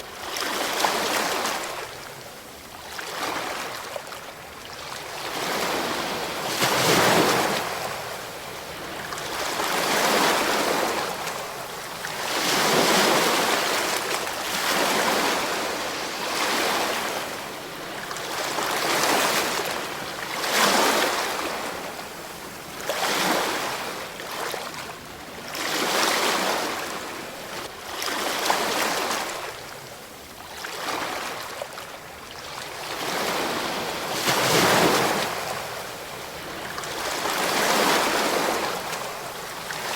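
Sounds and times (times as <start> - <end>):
ocean waves breaking: 12.1 - 19.9.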